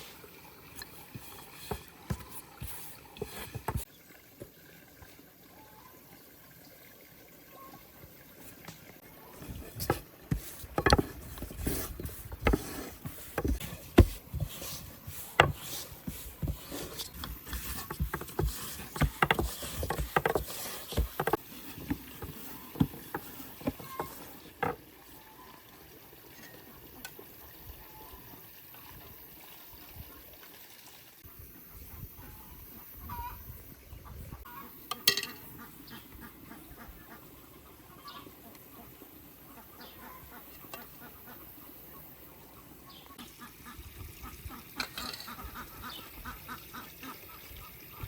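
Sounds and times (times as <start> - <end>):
objects knocking and clattering: 9.4 - 14.5, 15.4 - 24.8.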